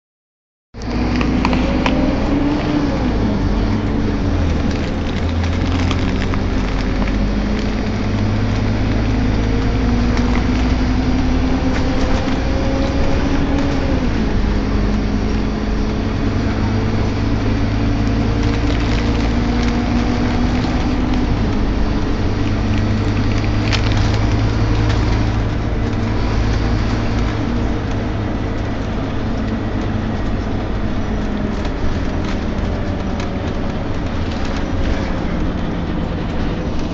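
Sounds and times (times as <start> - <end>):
bus engine groaning: 0.7 - 36.9
bus body rattles: 0.9 - 36.9.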